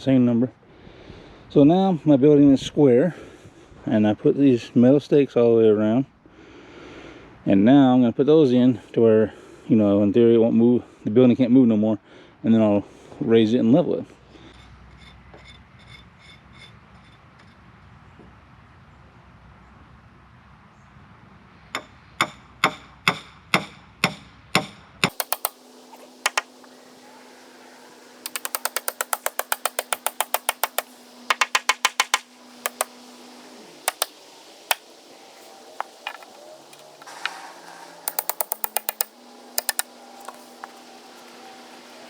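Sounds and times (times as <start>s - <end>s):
hammer striking metal stakes: 21.8s - 37.4s, 38.0s - 41.8s
sharp clicking strikes: 25.0s - 27.0s, 27.7s - 37.2s, 38.1s - 41.3s
steady low hum: 25.1s - 42.0s.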